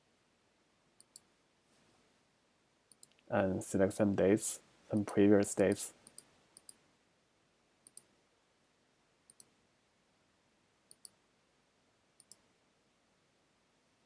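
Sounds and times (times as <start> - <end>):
computer mouse clicks: 1.0 - 1.3, 2.9 - 3.2, 5.0 - 6.8, 7.8 - 8.1, 9.3 - 9.6, 10.9 - 11.2, 12.2 - 12.5.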